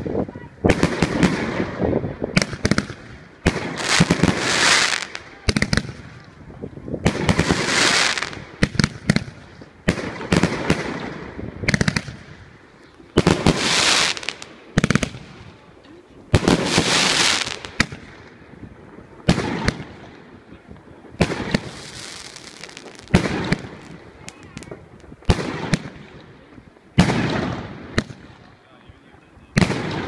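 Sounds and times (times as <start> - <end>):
firework bangs: 0.0 - 6.4, 7.0 - 15.7, 16.3 - 20.4, 21.0 - 26.3, 26.9 - 28.5, 29.5 - 30.0
firework hiss: 2.4 - 6.1, 7.1 - 9.4, 13.2 - 15.4, 16.4 - 17.9, 21.2 - 26.1.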